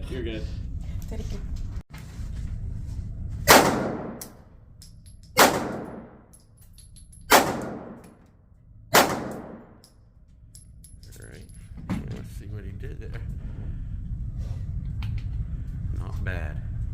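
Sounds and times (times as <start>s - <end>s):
pistol shots with ringing decay: 3.5s - 4.3s, 5.4s - 6.2s, 7.3s - 8.1s, 8.9s - 9.8s.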